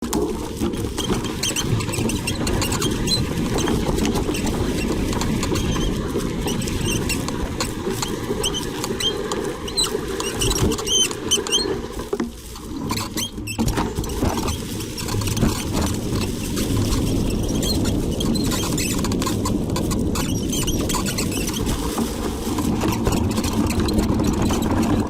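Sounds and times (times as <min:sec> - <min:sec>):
bicycle headset squeaking: 0:00.0 - 0:25.0.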